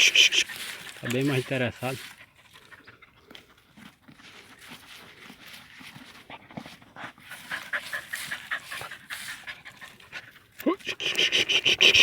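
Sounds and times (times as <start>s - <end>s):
dog panting: 6.3s - 12.0s.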